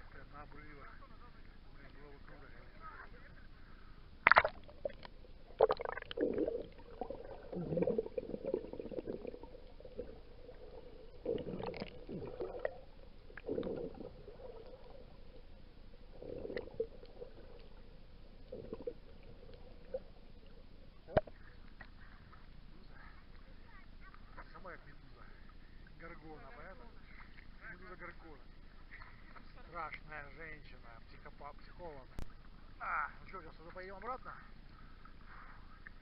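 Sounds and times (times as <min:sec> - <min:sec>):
water sloshing and gurgling: 0:01.4 - 0:30.1.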